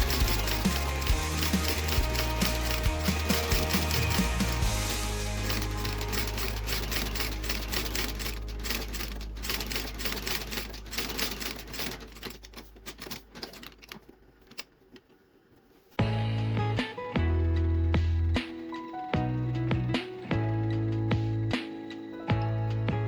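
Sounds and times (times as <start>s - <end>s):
machine clicking rapidly: 0.0s - 13.8s.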